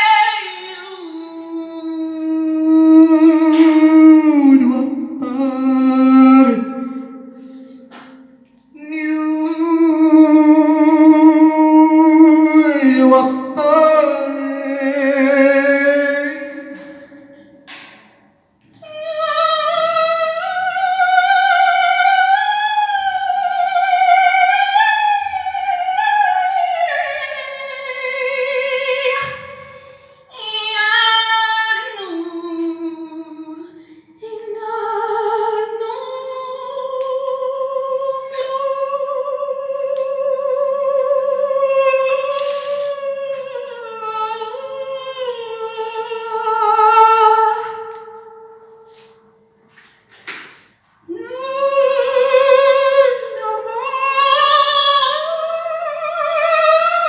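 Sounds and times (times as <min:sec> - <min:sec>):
woman singing operatically: 0:00.0 - 0:07.8, 0:08.7 - 0:17.5, 0:18.8 - 0:49.0, 0:51.1 - 0:57.0.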